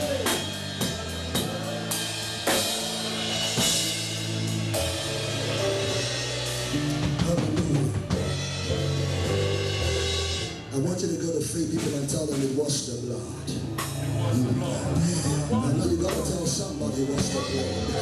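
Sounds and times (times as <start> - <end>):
keyboard chords: 0.0 - 12.0
bass: 0.0 - 18.0
drum kit: 0.0 - 18.0.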